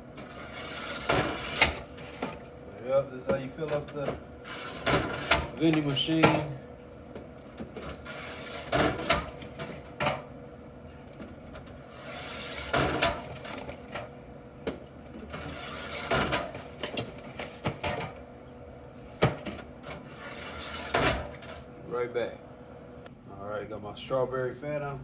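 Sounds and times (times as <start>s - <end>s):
cans clunking and clinking: 3.2s - 8.0s.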